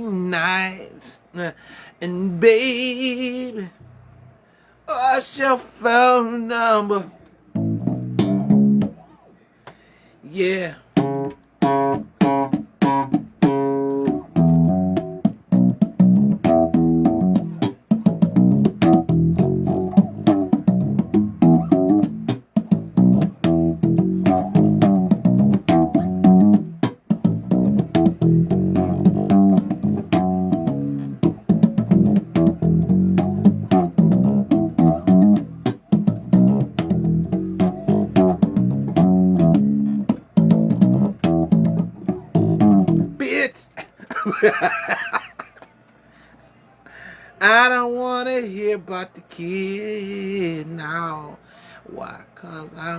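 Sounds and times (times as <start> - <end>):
bass guitar riffing: 7.5 - 9.1, 11.0 - 43.5.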